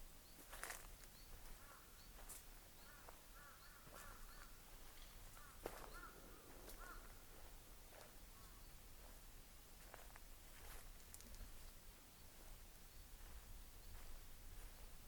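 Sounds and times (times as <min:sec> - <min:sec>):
distant birds calling: 0:00.2 - 0:09.1
footsteps on dry leaves: 0:00.4 - 0:03.2.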